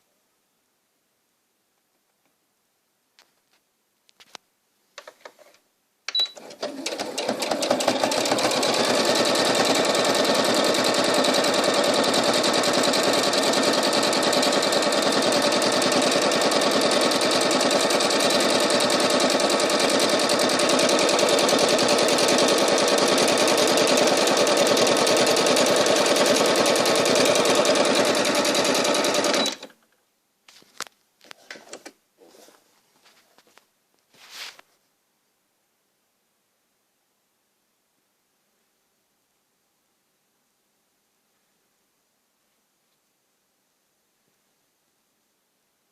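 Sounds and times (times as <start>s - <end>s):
sewing machine stitching: 6.2s - 29.8s.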